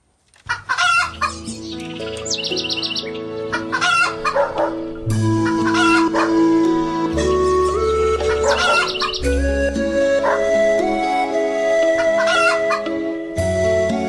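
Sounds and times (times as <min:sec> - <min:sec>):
high bird chirps: 0:00.7 - 0:06.4, 0:07.2 - 0:10.4
music with long held chords: 0:01.1 - 0:14.0.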